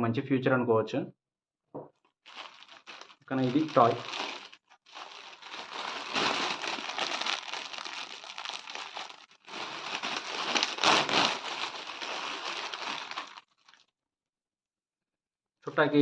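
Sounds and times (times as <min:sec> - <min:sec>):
plastic packaging crinkling: 0:02.2 - 0:13.9.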